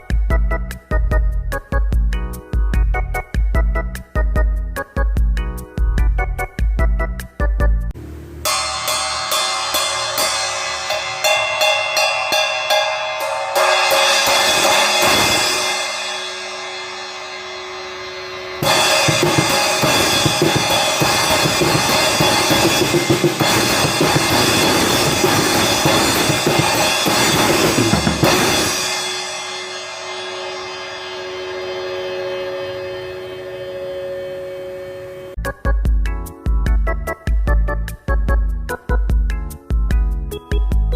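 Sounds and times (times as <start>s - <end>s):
drum kit with crashing cymbals: 8.3s - 33.9s
cymbal strikes: 8.4s - 35.4s.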